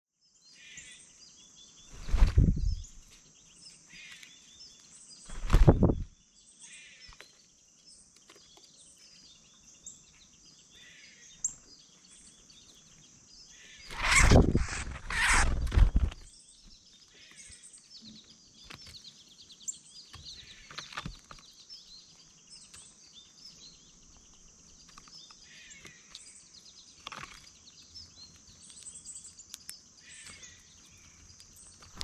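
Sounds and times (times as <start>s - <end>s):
small birds chirping: 0.1s - 32.0s
rumbling bursts on microphone: 2.0s - 3.0s.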